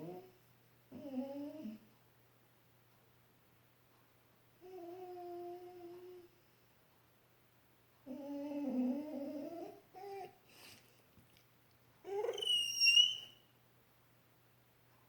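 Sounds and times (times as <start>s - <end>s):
dog whining: 8.1s - 10.4s, 12.0s - 13.4s.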